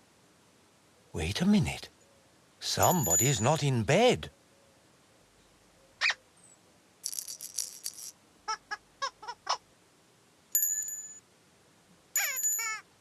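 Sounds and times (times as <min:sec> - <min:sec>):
rattling shimmer: 0:02.8 - 0:03.5
ringing bell-like tone: 0:02.8 - 0:03.5, 0:10.6 - 0:11.2, 0:12.2 - 0:12.8
squeaky chirps: 0:12.2 - 0:12.8.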